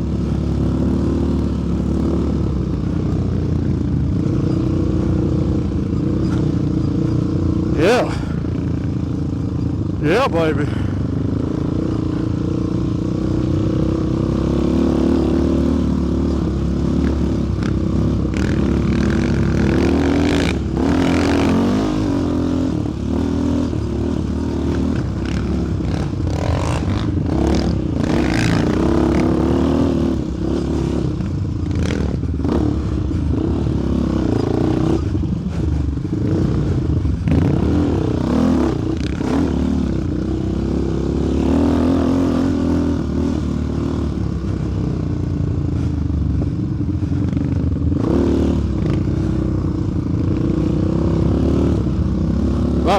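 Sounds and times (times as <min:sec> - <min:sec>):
quad engine revving: 0:07.6 - 0:08.5, 0:13.1 - 0:35.1, 0:36.2 - 0:44.1, 0:48.0 - 0:49.5, 0:50.3 - 0:52.9.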